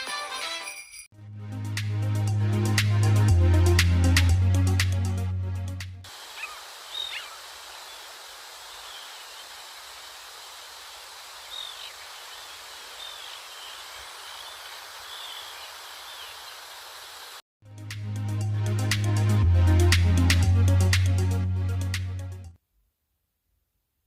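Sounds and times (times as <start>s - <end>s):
wind or rustling leaves hiss: 6.0s - 17.4s
small birds chirping: 6.1s - 17.4s.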